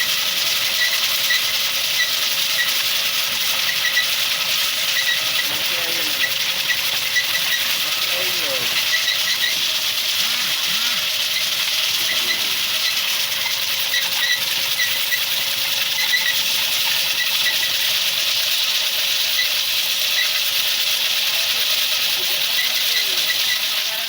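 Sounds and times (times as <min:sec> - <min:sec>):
short squeaks: 0:00.0 - 0:17.8
winding machine whirring: 0:00.0 - 0:24.0.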